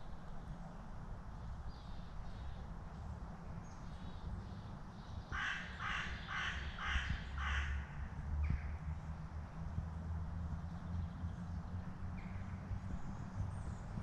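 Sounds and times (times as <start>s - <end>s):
crow cawing: 5.4s - 7.9s.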